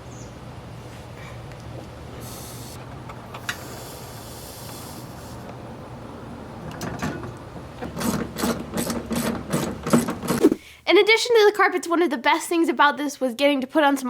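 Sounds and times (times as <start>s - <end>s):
scraping hiss: 2.2s - 2.8s, 3.4s - 5.5s
quick rasping strokes: 10.3s - 10.7s.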